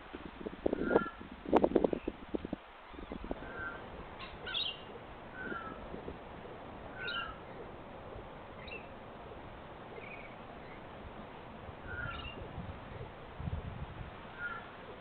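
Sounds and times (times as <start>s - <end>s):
steady background hiss: 0.0s - 15.0s
birds chirping: 2.8s - 13.4s, 14.2s - 15.0s.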